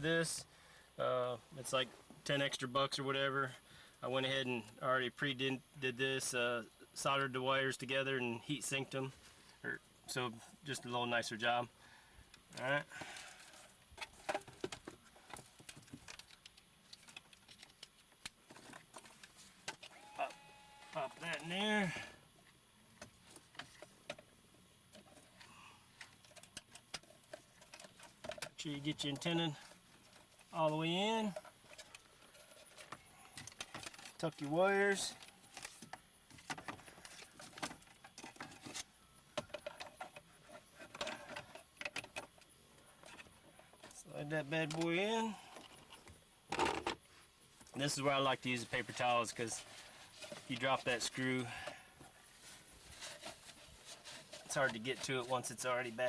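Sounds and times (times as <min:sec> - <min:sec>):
wiring and plastic parts rattling: 0:12.5 - 0:22.1, 0:24.9 - 0:47.0, 0:47.6 - 0:51.8, 0:52.4 - 0:56.0.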